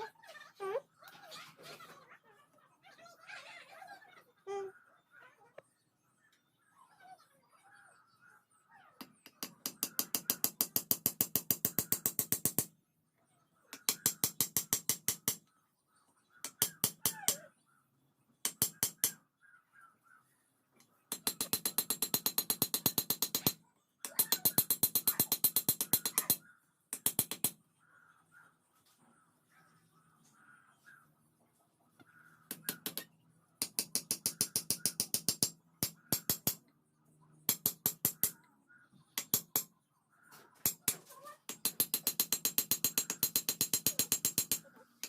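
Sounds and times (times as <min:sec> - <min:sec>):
faint bird chirps: 0:00.0 - 0:10.6, 0:15.4 - 0:21.2, 0:27.6 - 0:33.6, 0:38.2 - 0:41.5
rapid hammering on metal: 0:09.1 - 0:12.7, 0:13.7 - 0:15.4, 0:16.4 - 0:17.4, 0:18.4 - 0:19.2, 0:21.1 - 0:27.6, 0:32.5 - 0:36.6, 0:37.5 - 0:38.4, 0:39.2 - 0:39.7, 0:40.6 - 0:44.6.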